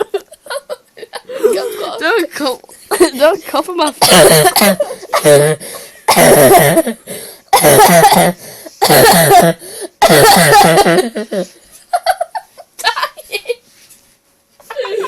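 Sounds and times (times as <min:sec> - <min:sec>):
person laughing: 0:00.0 - 0:01.9, 0:10.4 - 0:13.6, 0:14.6 - 0:15.0
person coughing harshly: 0:04.0 - 0:11.5.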